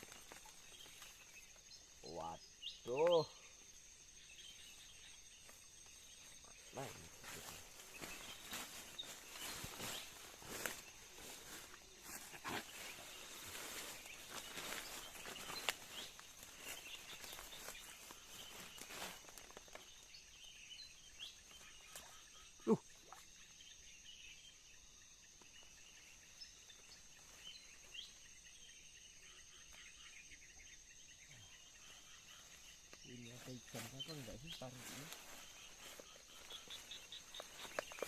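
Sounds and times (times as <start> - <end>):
rustling through undergrowth: 0.0 - 1.9, 4.4 - 22.1, 31.8 - 38.0
bird chirps: 0.0 - 38.0
high insect drone: 0.0 - 38.0.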